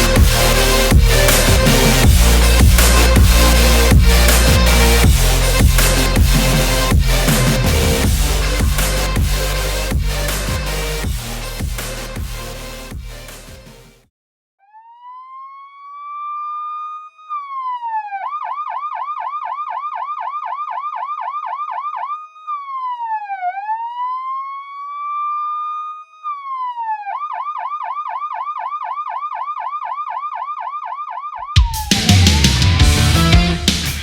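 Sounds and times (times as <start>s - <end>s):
police siren wailing and yelping: 14.9s - 33.2s.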